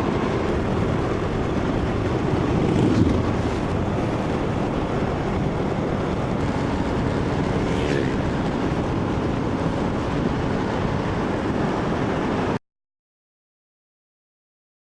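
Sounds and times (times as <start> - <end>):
scooter engine running: 0.0 - 11.2
wind noise on microphone: 0.0 - 12.6.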